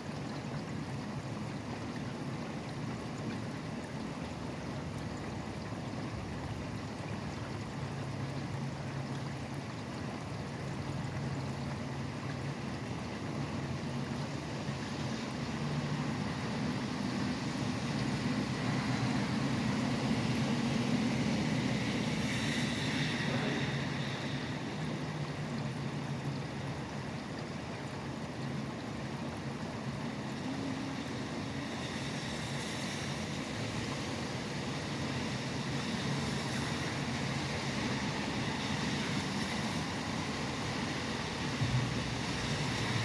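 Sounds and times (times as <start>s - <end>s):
steady rain: 0.0s - 43.0s
traffic on wet highway: 13.7s - 26.2s, 30.2s - 43.0s.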